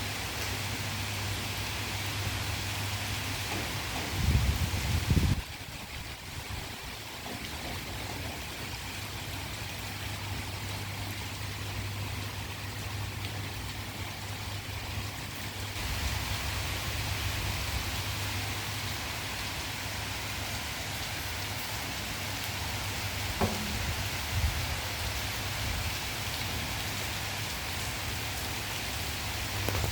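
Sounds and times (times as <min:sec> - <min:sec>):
steady rainfall: 0:00.0 - 0:29.9
brief knock: 0:23.4 - 0:24.3.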